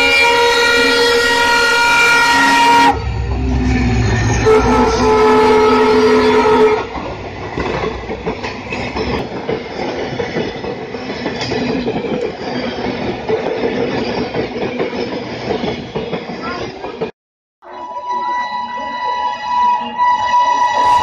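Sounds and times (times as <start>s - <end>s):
train horn chord: 0.0s - 7.0s, 17.6s - 21.0s
train wheels on rails: 0.0s - 17.1s.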